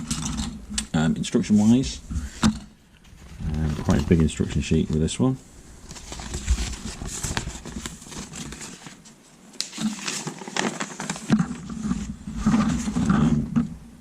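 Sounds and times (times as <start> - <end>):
paper rustling and crackling: 3.0 - 5.1, 5.8 - 13.6.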